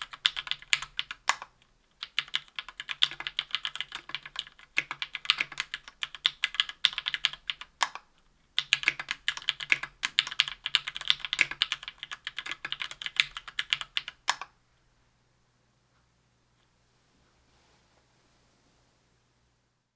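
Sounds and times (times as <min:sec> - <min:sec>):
fast typing on mechanical keyboard: 0:00.0 - 0:08.0, 0:08.6 - 0:14.5.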